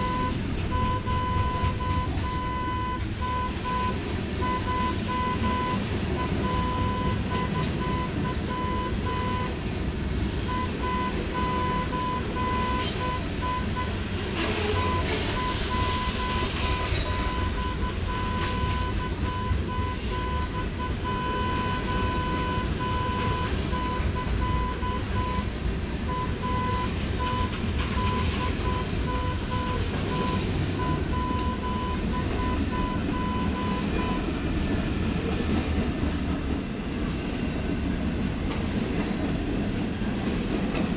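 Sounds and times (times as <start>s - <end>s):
warning tone beeping: 0.0s - 9.6s, 10.5s - 14.0s, 14.8s - 25.5s, 26.1s - 34.3s
steady low rumble: 0.0s - 40.9s.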